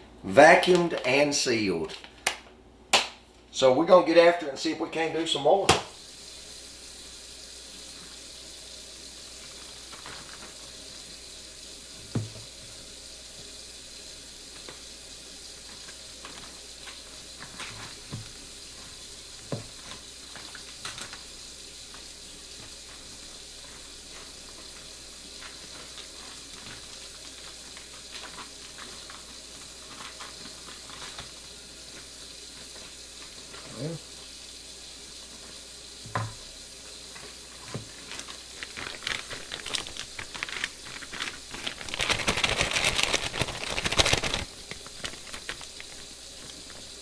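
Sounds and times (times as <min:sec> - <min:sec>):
meat packed into plastic bags: 0:09.3 - 0:11.0, 0:15.6 - 0:34.0, 0:37.2 - 0:47.0.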